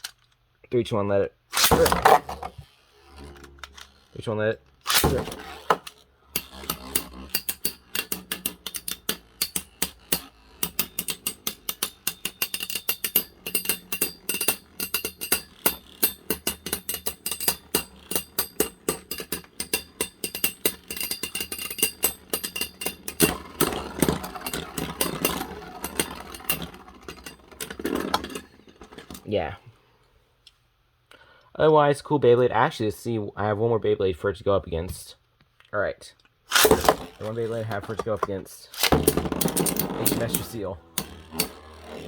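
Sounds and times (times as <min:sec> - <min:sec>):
spinning tops clashing: 0:01.5 - 0:29.3, 0:36.5 - 0:42.0.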